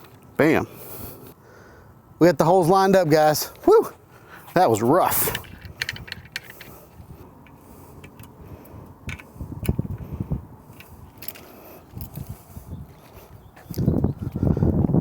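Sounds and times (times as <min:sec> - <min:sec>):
small metal clicks and knocks: 0:05.3 - 0:06.8, 0:09.1 - 0:09.8.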